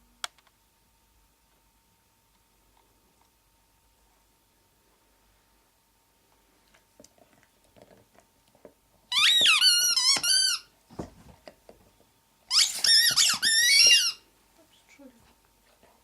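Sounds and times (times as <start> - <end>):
rubber squeaky toy squeaking: 9.1 - 10.7, 12.5 - 14.2.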